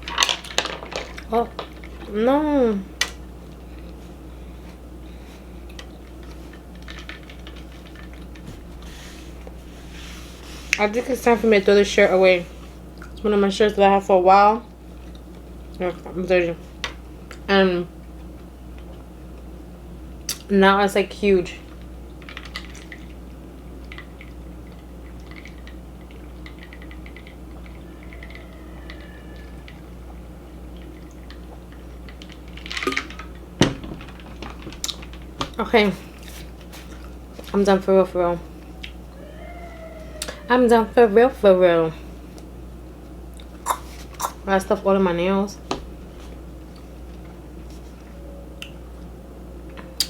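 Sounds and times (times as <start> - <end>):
low steady hum: 0.0 - 50.0
wet eating clicks and squishes: 21.7 - 37.6.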